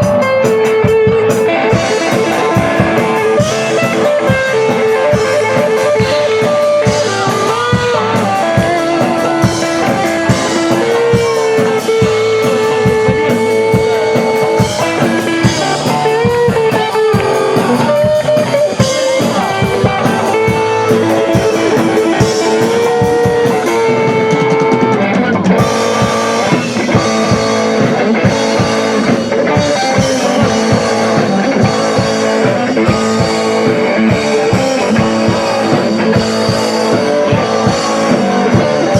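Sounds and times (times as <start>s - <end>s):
electric guitar lead bending notes: 0.0s - 38.9s
rock music: 0.0s - 38.9s.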